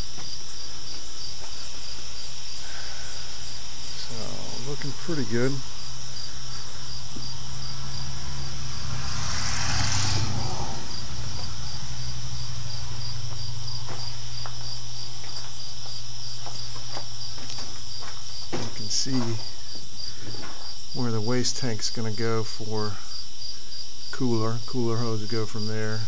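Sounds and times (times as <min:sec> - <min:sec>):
crickets chirping: 0:00.0 - 0:26.0
low steady hum: 0:00.0 - 0:26.0
brief rushing noise: 0:07.5 - 0:12.7.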